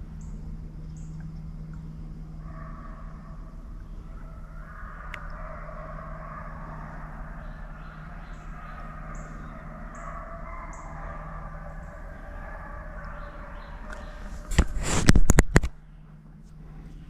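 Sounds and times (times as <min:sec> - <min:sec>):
steady outdoor hum: 0:00.0 - 0:17.0
small bird chirping: 0:03.8 - 0:14.6.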